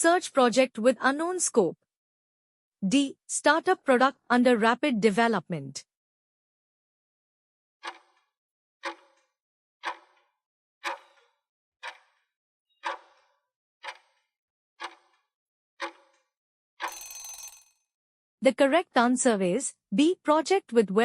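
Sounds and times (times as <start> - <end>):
clock-like timer ticks: 7.8 - 17.3.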